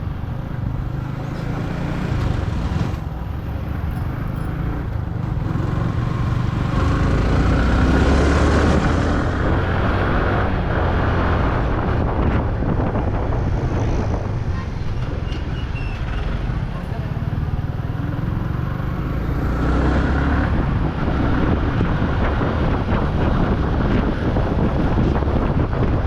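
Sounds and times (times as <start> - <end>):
road and wind noise: 0.0 - 26.0
motorcycle engine running: 16.1 - 26.0.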